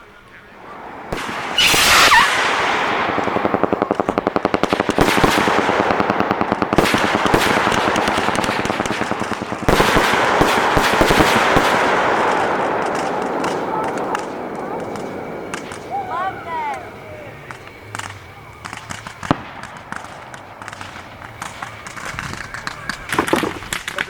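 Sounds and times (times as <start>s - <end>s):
dense firework crackling: 0.0s - 24.0s
firework shell bursts: 0.7s - 16.3s.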